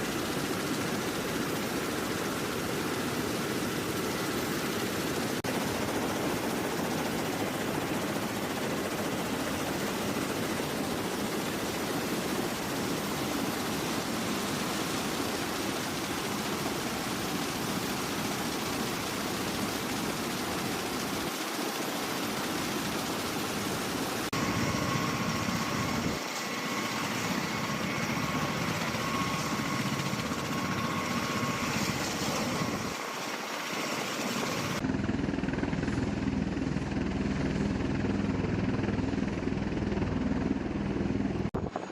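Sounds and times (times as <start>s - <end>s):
aircraft rotors rushing noise: 22.2s - 41.9s.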